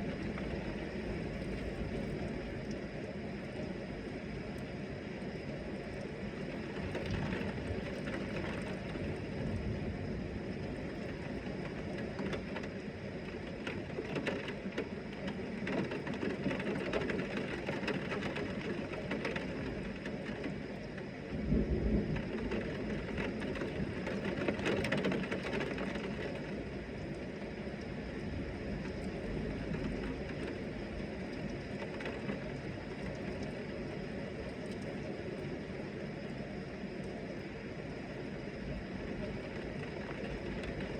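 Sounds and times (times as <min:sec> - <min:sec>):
heavy rain: 0:00.0 - 0:40.9
thunder rumble: 0:06.3 - 0:14.1, 0:21.3 - 0:27.1.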